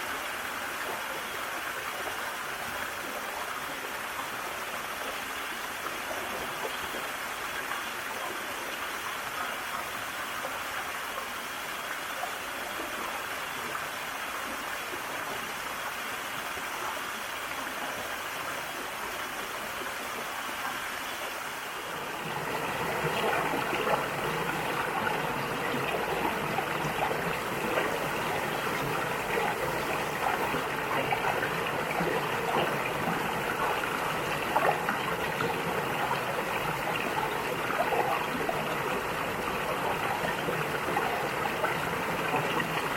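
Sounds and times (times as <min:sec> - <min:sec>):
stream flowing over rocks: 0:00.0 - 0:42.9
small water splashes: 0:20.4 - 0:42.9.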